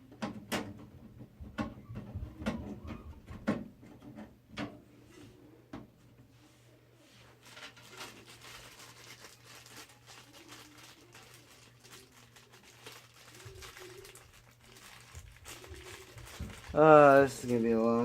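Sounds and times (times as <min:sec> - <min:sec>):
packaging rustling and crinkling: 0:07.4 - 0:18.0.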